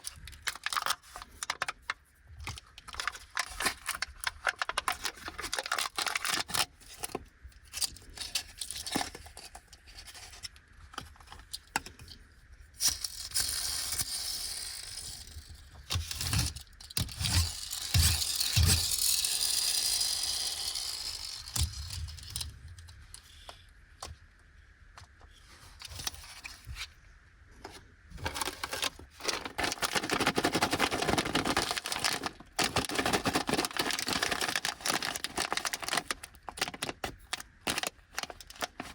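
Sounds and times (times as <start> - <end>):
snack bag crinkling: 0.0 - 6.7, 28.2 - 38.9
plastic wrappers tearing and crinkling: 0.0 - 10.2, 28.2 - 38.9.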